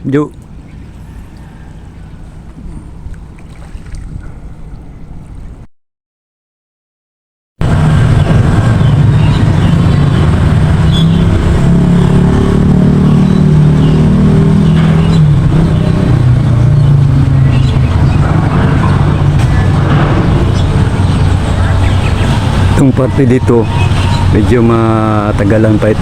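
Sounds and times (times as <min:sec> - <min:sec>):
engine revving: 0:07.6 - 0:26.0.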